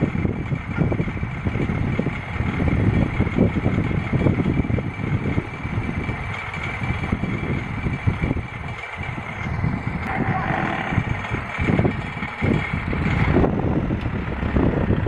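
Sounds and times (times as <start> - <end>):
engine low chugging: 0.0 - 15.0
steady high whine: 8.6 - 13.6.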